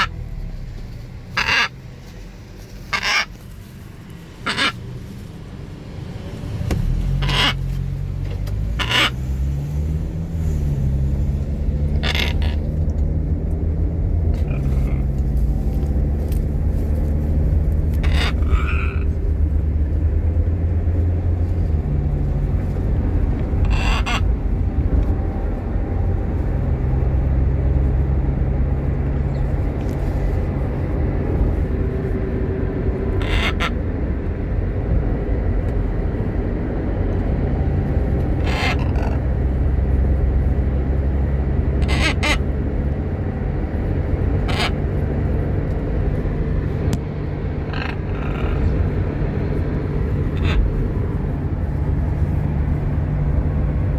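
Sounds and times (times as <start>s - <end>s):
harsh parrot calls: 0.0s - 0.2s, 1.3s - 1.8s, 2.9s - 3.4s, 4.4s - 4.8s, 7.1s - 7.7s, 8.7s - 9.2s, 11.8s - 12.9s, 14.3s - 15.2s, 17.9s - 19.3s, 23.5s - 24.3s, 33.0s - 33.8s, 38.3s - 39.4s, 41.7s - 42.5s, 44.3s - 44.8s, 47.4s - 49.0s, 49.8s - 50.9s
steady low rumble: 0.0s - 53.9s.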